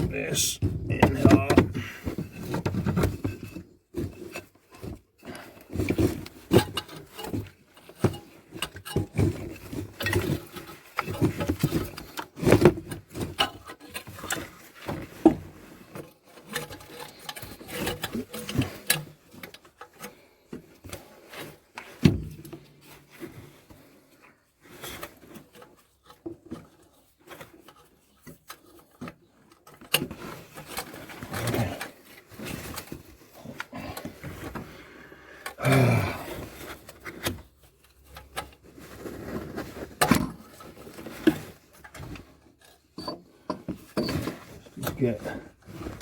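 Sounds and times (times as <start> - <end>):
scraping and rubbing: 36.4 - 43.1.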